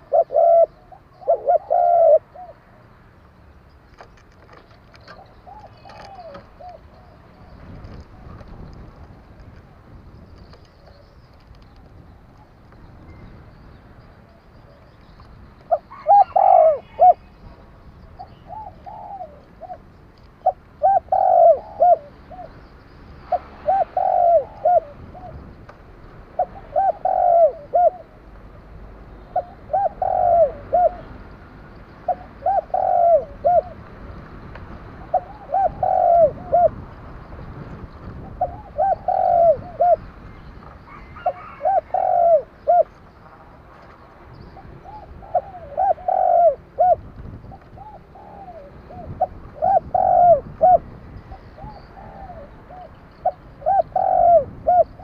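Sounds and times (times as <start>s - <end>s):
dove cooing: 0.0s - 2.8s, 5.1s - 8.8s, 15.7s - 17.3s, 18.2s - 22.6s, 23.3s - 25.5s, 26.4s - 28.2s, 29.3s - 31.1s, 32.0s - 33.8s, 35.0s - 36.8s, 38.1s - 40.1s, 40.9s - 43.0s, 44.6s - 55.0s.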